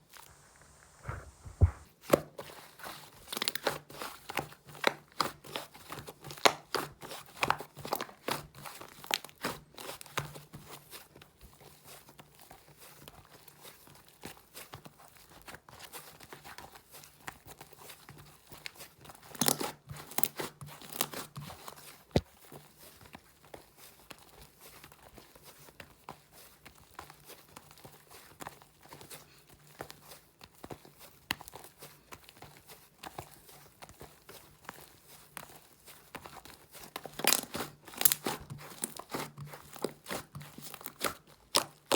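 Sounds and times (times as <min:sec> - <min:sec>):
slime popping and crackling: 0:37.2 - 0:39.2.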